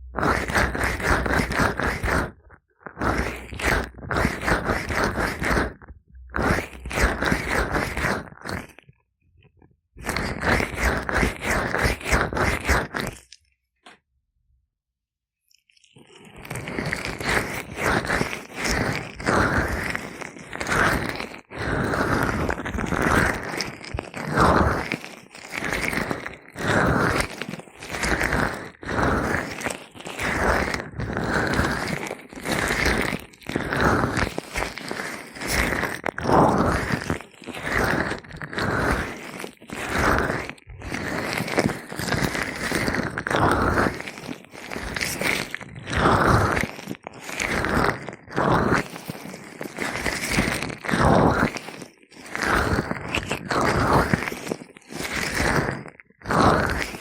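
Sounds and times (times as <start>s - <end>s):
gloved hands rubbing oil: 0.0s - 8.8s, 10.0s - 13.2s, 26.7s - 55.7s.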